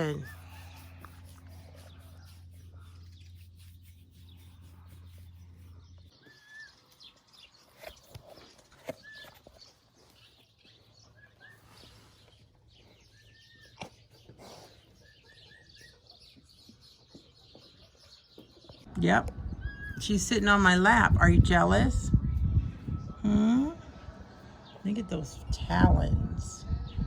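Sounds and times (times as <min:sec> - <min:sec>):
steady low hum: 0:00.0 - 0:06.3, 0:18.8 - 0:27.0
soft bird chirps: 0:00.0 - 0:20.4.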